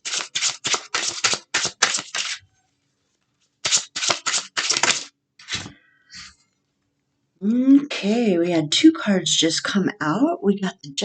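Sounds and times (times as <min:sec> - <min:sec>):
cards being shuffled: 0:00.0 - 0:02.4, 0:03.6 - 0:05.7.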